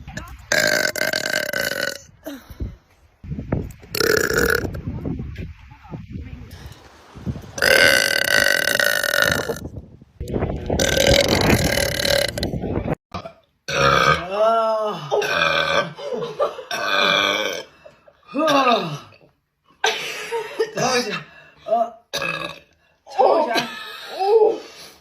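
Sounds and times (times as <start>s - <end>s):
woman burping loudly: 0.5s - 2.4s, 3.9s - 4.8s, 7.6s - 9.7s, 10.8s - 12.5s, 13.2s - 14.4s, 15.1s - 16.0s, 16.7s - 19.3s, 22.1s - 22.7s.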